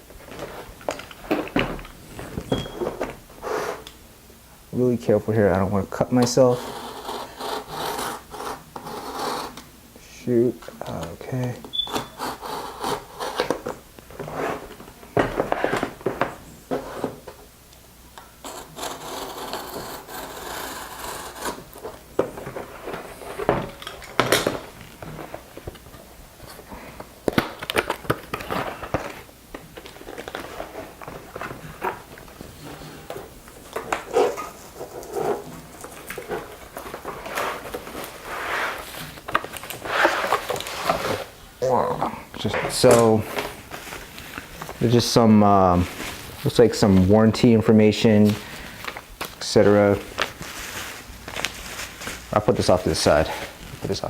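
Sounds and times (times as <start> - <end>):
cardboard box scraping and rubbing: 37.2 - 39.2, 39.8 - 41.4.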